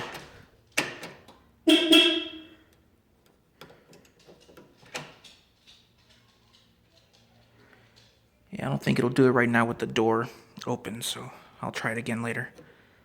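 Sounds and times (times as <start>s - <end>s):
short loud car beep: 1.7s - 2.6s.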